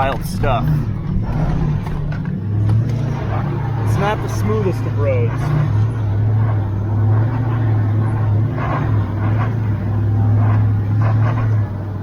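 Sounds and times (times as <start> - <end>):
truck engine running at low revs: 0.0 - 12.0.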